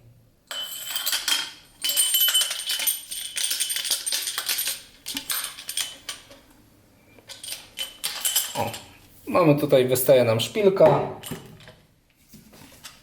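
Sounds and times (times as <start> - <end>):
metal parts rattling in fork leg: 0.8 - 6.4.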